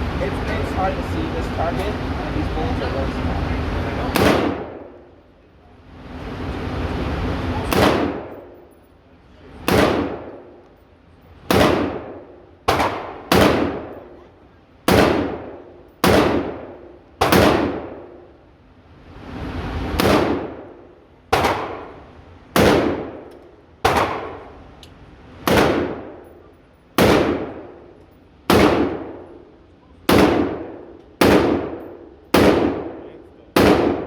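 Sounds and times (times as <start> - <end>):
gunshots with long echo: 4.1 - 5.1, 7.7 - 8.6, 9.6 - 10.6, 11.4 - 14.2, 14.9 - 18.3, 19.9 - 24.6, 25.4 - 26.4, 27.0 - 27.9, 28.5 - 29.5, 30.1 - 34.0.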